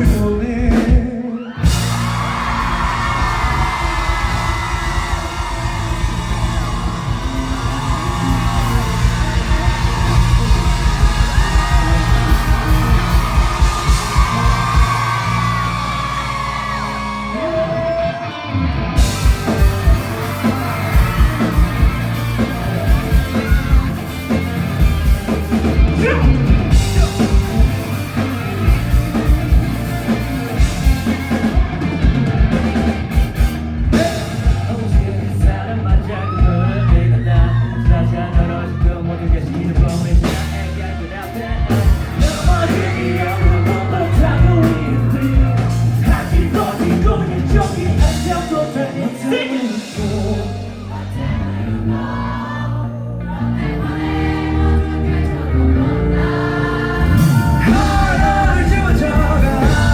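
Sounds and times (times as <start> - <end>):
audience screaming and cheering: 0.0 - 59.9
live rock band: 0.0 - 59.9
person singing: 25.7 - 32.3, 33.9 - 59.9.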